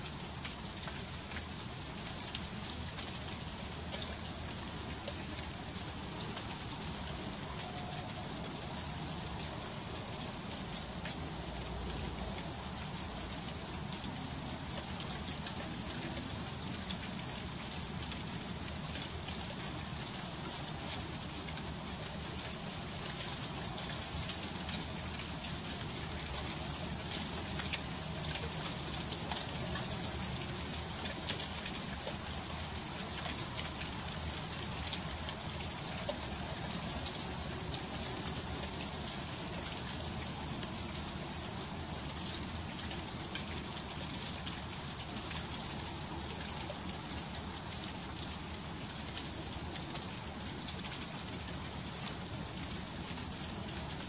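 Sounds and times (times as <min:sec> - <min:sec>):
freezing rain ticking on surfaces: 0:00.0 - 0:54.0.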